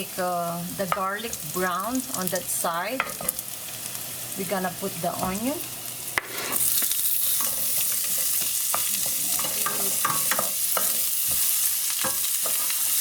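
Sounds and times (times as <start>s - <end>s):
onion sizzling in a frying pan: 0.0s - 13.0s
utensil scraping a pan: 6.2s - 13.0s.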